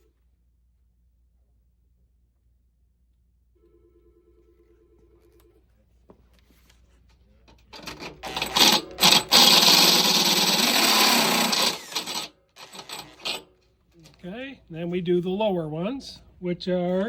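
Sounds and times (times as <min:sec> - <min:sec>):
power drill drilling: 0:07.8 - 0:13.4.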